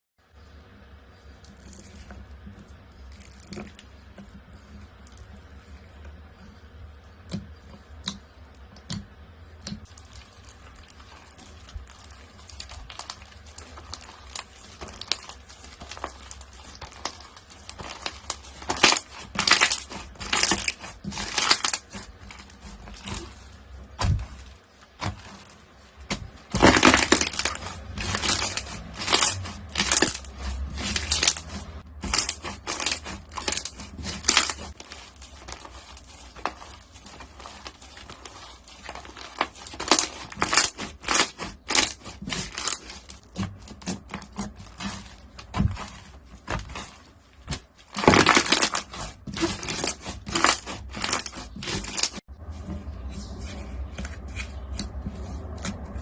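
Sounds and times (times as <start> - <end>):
crunchy slime crackling: 1.3 - 8.2, 8.8 - 56.0.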